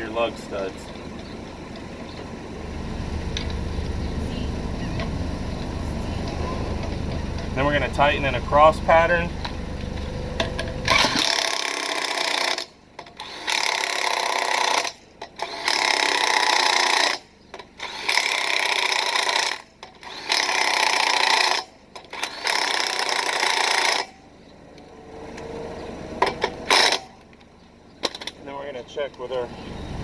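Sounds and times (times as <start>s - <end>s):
impact wrench rattling: 10.4s - 24.2s, 26.2s - 27.2s, 28.0s - 28.4s.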